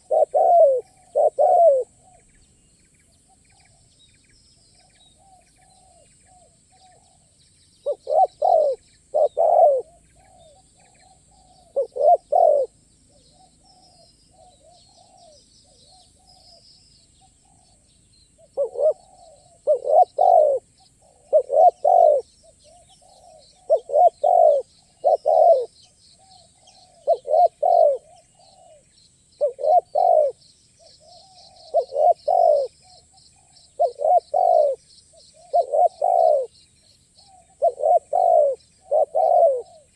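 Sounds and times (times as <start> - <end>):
dove cooing: 0.0 - 2.2, 6.8 - 16.6, 18.4 - 28.8, 29.4 - 34.8, 35.4 - 36.6, 37.2 - 39.9
small birds chirping: 0.0 - 39.9.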